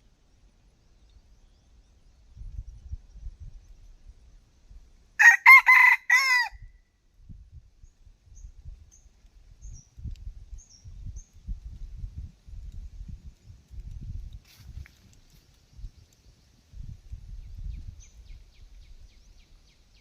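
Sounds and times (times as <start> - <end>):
rooster crowing: 5.2 - 6.6.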